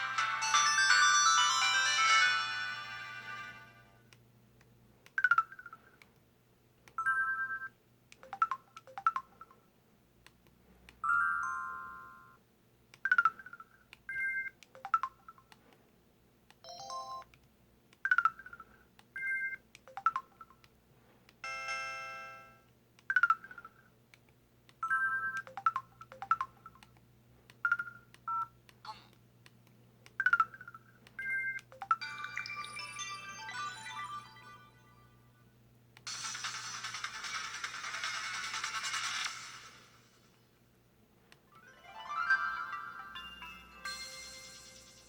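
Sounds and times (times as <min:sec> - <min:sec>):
electronic phone chimes and beeps: 0:30.2 - 0:35.0.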